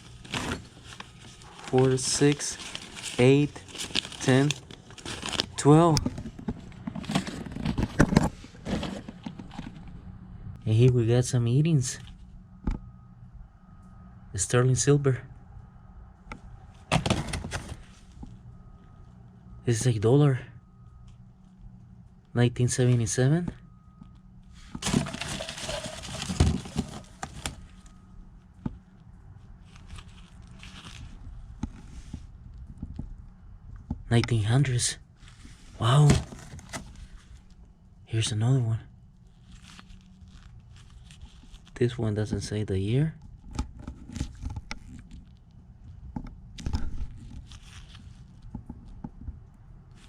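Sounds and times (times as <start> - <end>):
paper or plastic rustling: 0.0 - 10.0, 16.9 - 18.2, 24.6 - 28.1, 29.6 - 32.3, 39.3 - 41.8, 46.6 - 48.9.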